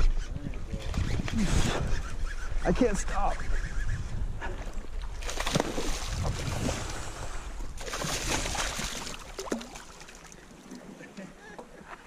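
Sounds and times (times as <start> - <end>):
wind buffeting the microphone: 0.0 - 9.2
water splashing around a kayak: 4.7 - 12.0.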